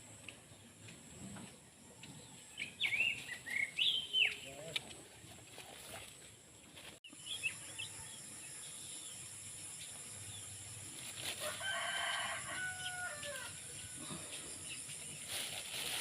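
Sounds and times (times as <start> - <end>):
rooster crowing: 11.4 - 14.0.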